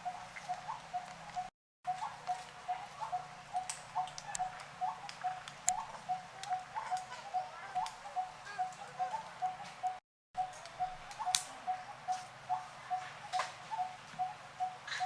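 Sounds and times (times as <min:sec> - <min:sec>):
bird calling a low note: 0:00.0 - 0:15.0
sharp clicks: 0:03.6 - 0:05.8.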